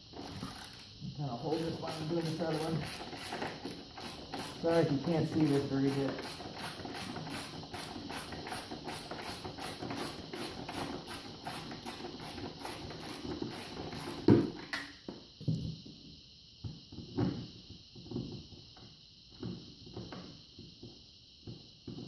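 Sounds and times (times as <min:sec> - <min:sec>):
ratchet wrench clicking: 0:00.2 - 0:14.5.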